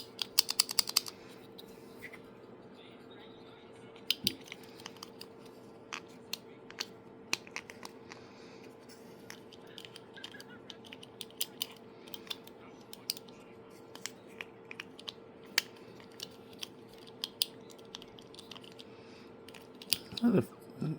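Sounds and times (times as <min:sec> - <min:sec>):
plastic clicker clicking: 0:00.0 - 0:01.2, 0:04.0 - 0:05.3, 0:09.3 - 0:13.3, 0:14.0 - 0:18.8, 0:19.5 - 0:20.2
steady faint hum: 0:00.0 - 0:20.9.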